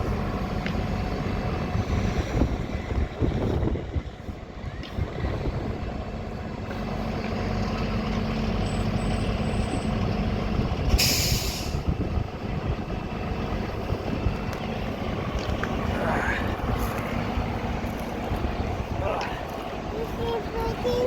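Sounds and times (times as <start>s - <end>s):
truck engine running: 0.0s - 21.0s
air brake hiss: 10.9s - 11.9s.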